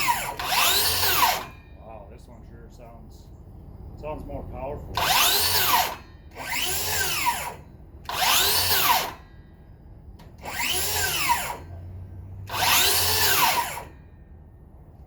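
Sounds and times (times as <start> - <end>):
circular saw spinning up: 0.0 - 1.6, 5.0 - 9.3, 10.4 - 11.7, 12.5 - 14.0.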